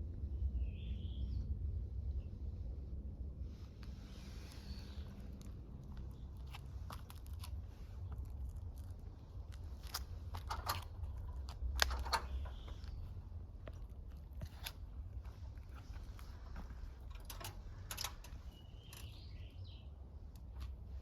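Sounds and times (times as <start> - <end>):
low steady rumble: 0.0 - 21.0
faint bird chirps: 0.3 - 1.5, 18.2 - 20.0
crunching rustles: 3.8 - 19.6.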